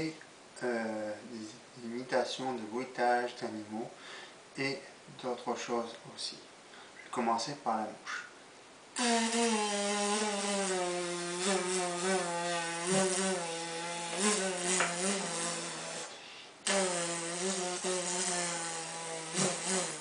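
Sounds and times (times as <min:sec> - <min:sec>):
person imitating fly buzz: 0:09.0 - 0:20.0.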